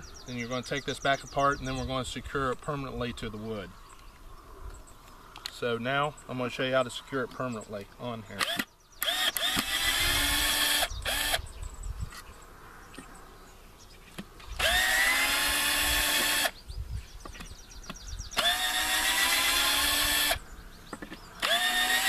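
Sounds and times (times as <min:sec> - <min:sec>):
power drill whining: 0:08.4 - 0:11.4, 0:14.6 - 0:16.5, 0:18.4 - 0:20.4, 0:21.4 - 0:22.0.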